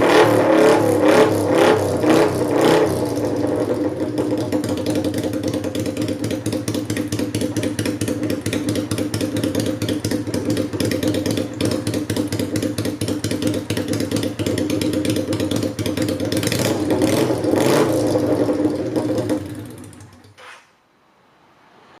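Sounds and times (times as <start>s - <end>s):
motorcycle engine idling: 3.0s - 20.4s.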